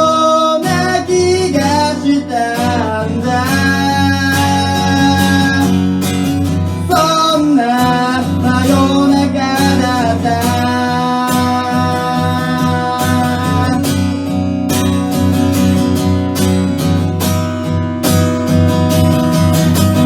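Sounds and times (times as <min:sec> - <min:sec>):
person singing wordless melody: 0:00.0 - 0:06.0, 0:06.7 - 0:14.1
acoustic guitar strumming: 0:00.0 - 0:20.0.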